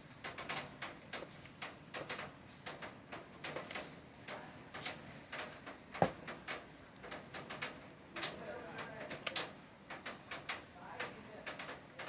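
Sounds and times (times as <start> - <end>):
short high-pitched electronic beeps: 1.3 - 1.5, 2.1 - 2.3, 3.6 - 3.8.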